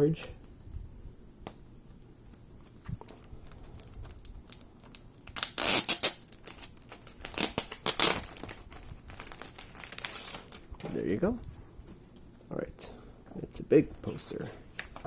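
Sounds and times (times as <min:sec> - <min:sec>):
paper crinkling and rustling: 0:02.6 - 0:11.1.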